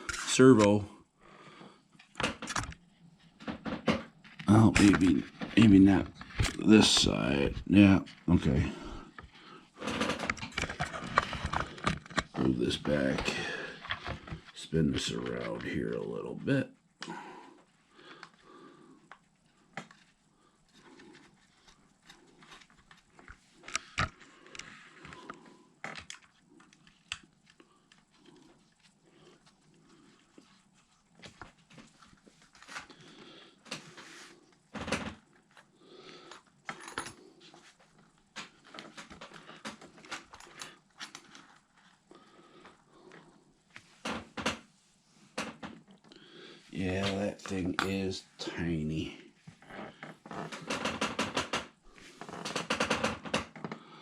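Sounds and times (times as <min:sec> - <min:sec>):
clicks of parts and tools handled: 0:09.2 - 0:12.5.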